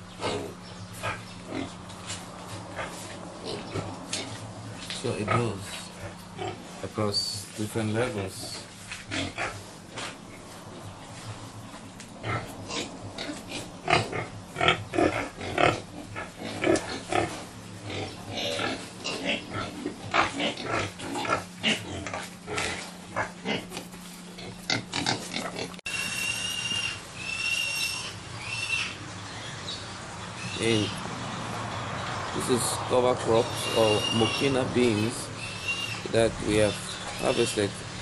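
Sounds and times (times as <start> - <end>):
pigs grunting and squealing: 0.0 - 1.8, 2.5 - 6.9, 8.1 - 29.1, 30.3 - 31.3, 32.2 - 38.0
high chirping bird calls: 25.9 - 31.0, 33.3 - 37.8.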